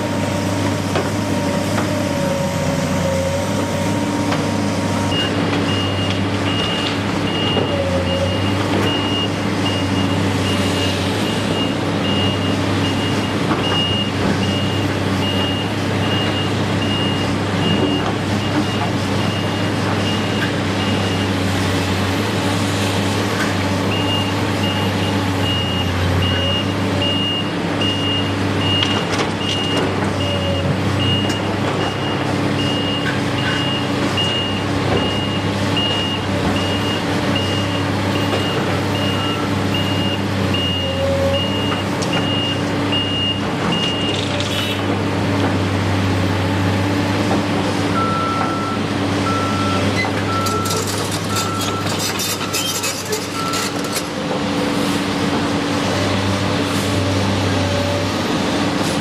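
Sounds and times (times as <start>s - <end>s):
engine drone: 0.0s - 27.9s
high reversing alarm beeping: 5.0s - 21.3s.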